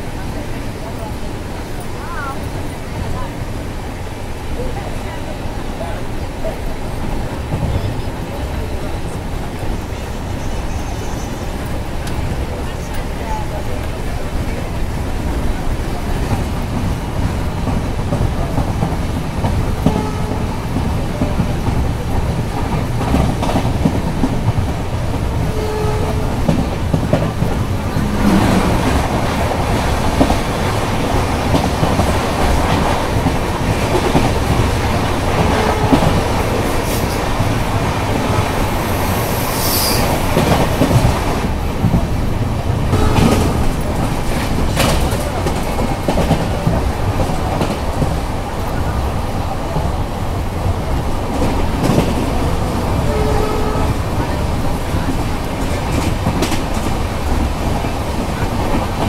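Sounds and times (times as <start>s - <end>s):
train rumbling: 0.0s - 59.0s
high wheel squeal: 38.8s - 40.4s.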